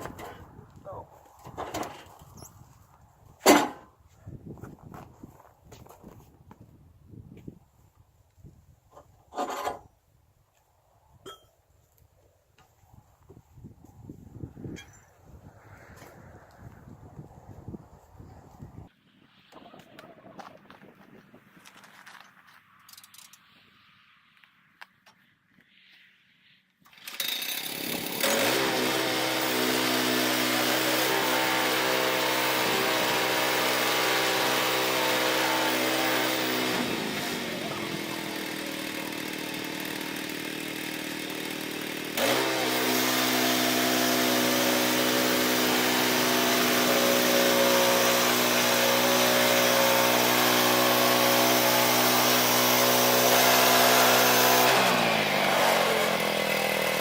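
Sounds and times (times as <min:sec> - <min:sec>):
gas engine revving: 0:27.7 - 0:57.0.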